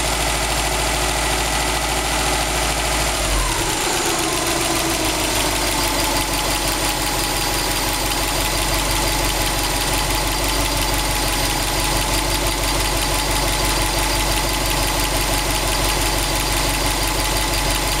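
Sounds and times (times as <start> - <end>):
car engine idling: 0.0 - 18.0
rhythmic engine knocking: 3.6 - 18.0.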